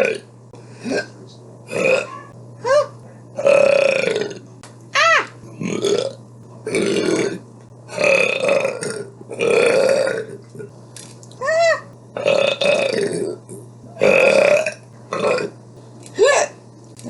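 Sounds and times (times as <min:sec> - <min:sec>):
woman belching: 0:01.7 - 0:04.4, 0:05.5 - 0:10.4, 0:11.4 - 0:15.6.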